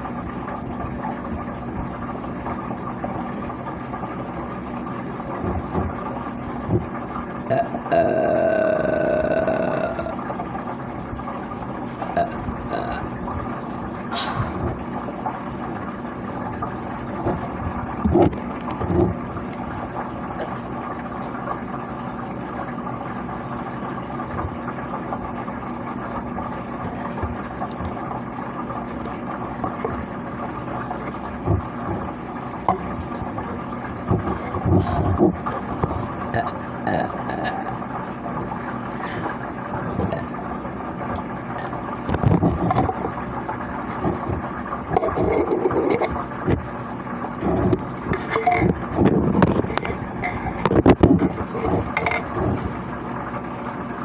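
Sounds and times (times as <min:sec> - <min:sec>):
steady background hum: 0:00.0 - 0:54.0
person burping: 0:07.5 - 0:10.3, 0:12.0 - 0:13.1, 0:36.3 - 0:37.8, 0:39.9 - 0:40.4, 0:41.6 - 0:41.8, 0:49.6 - 0:52.8.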